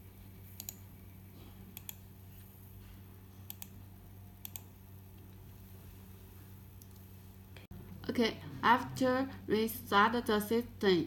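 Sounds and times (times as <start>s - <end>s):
steady low hum: 0.0s - 11.0s
computer mouse clicking: 0.5s - 0.8s, 1.7s - 2.0s, 3.4s - 3.8s, 4.4s - 4.7s.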